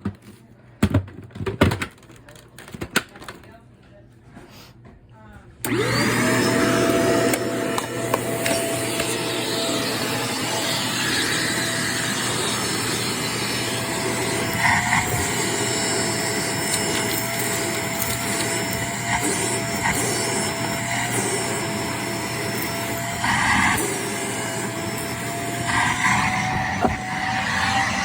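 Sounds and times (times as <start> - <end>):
vacuum cleaner running: 5.6 - 28.0.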